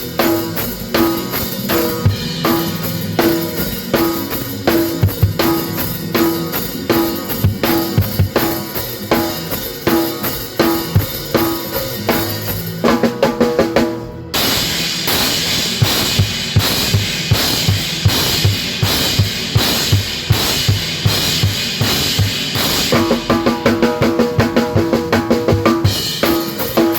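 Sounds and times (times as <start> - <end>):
drum kit beat: 0.0 - 26.9
cymbals washing: 14.4 - 23.7.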